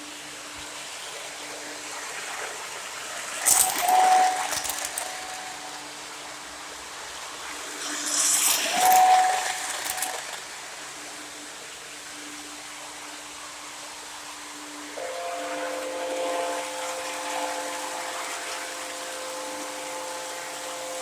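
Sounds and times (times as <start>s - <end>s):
steam hiss: 0.0s - 21.0s
model train whistle: 3.4s - 5.9s, 7.8s - 10.3s, 15.0s - 21.0s.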